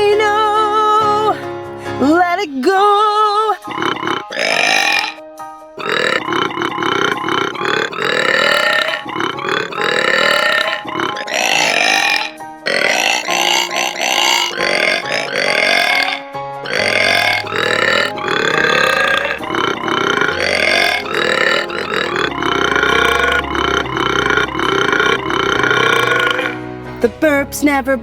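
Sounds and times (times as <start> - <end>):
music backing track: 0.0 - 28.0
person belching: 3.6 - 5.2, 5.8 - 26.6.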